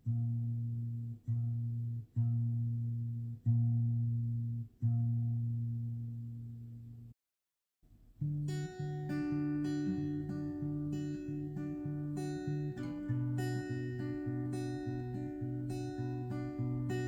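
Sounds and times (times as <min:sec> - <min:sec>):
plucked guitar notes: 0:08.2 - 0:17.0.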